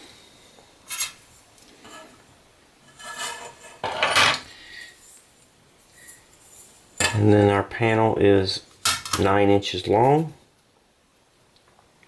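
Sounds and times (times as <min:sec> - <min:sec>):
tools scraping on aluminum sheet: 0:00.9 - 0:01.2, 0:01.8 - 0:02.2, 0:02.8 - 0:04.5.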